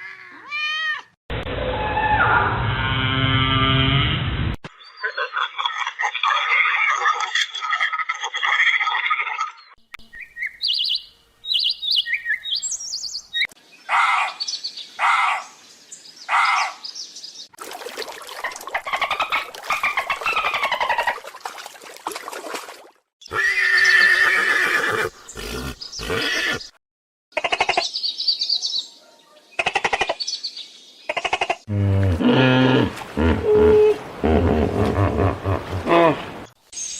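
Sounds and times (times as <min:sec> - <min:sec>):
animal calls: 0:18.4 - 0:21.2, 0:23.3 - 0:26.7, 0:31.1 - 0:36.4
horse whinny: 0:23.3 - 0:26.7, 0:31.7 - 0:36.2.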